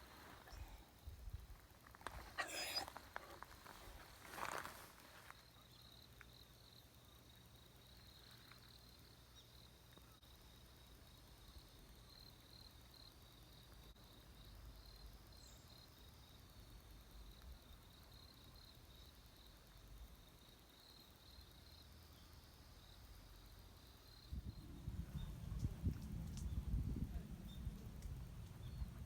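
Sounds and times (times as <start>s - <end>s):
rustle: 0.0s - 14.0s.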